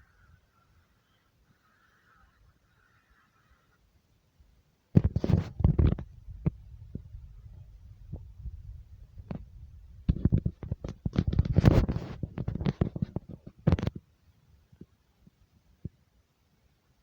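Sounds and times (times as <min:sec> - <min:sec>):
objects rattling and knocking: 0:09.2 - 0:14.0.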